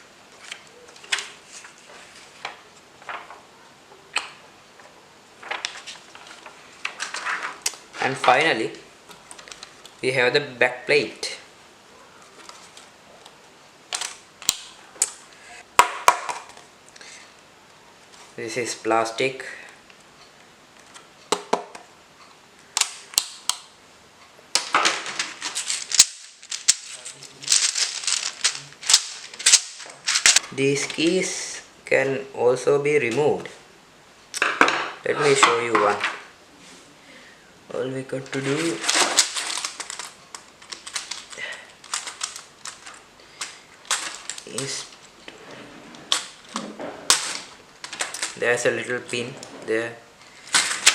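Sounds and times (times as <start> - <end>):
plastic keyboard parts clattering: 5.4 - 8.4, 13.9 - 15.2, 24.6 - 30.4, 38.3 - 48.5, 50.4 - 50.9.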